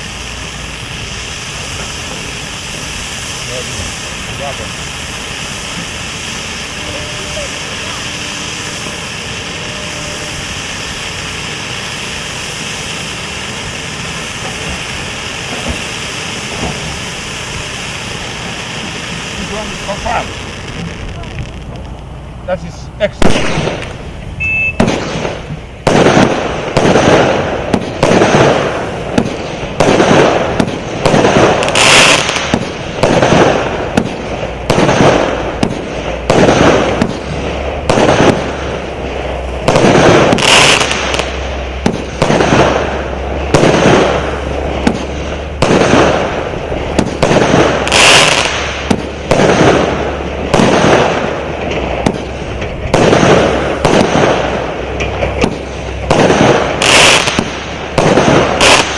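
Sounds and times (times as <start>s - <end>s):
crackling firework burst: 0.0s - 58.9s
firework bangs: 0.0s - 58.9s.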